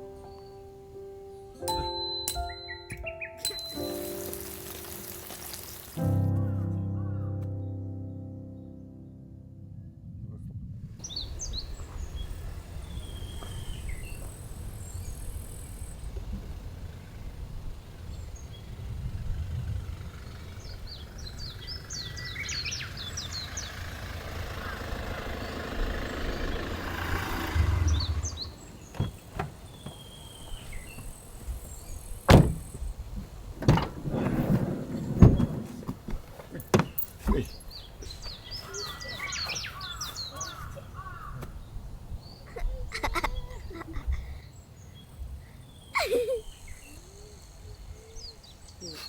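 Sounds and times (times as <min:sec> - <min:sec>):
bird chirps: 0:00.0 - 0:07.7, 0:11.0 - 0:32.9, 0:36.7 - 0:49.0
low outdoor rumble: 0:09.4 - 0:49.0
sharp knocks and thuds: 0:32.3 - 0:34.5, 0:35.1 - 0:37.6.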